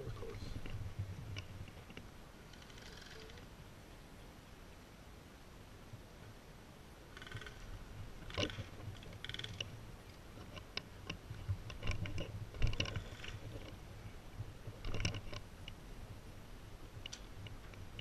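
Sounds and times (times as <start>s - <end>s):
irregular clicks and knocks: 8.2s - 13.8s, 14.7s - 15.8s, 17.0s - 18.0s.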